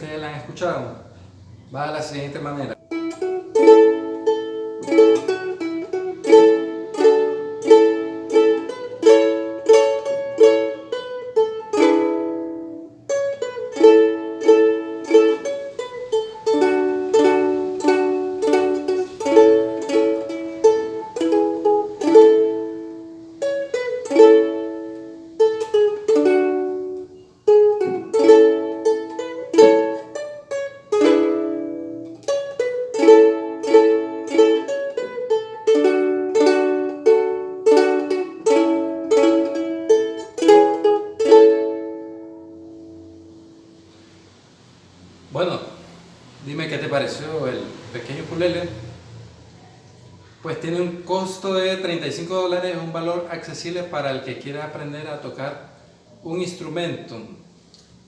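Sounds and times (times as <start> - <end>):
ukulele strumming hymn melody: 2.7 - 45.2.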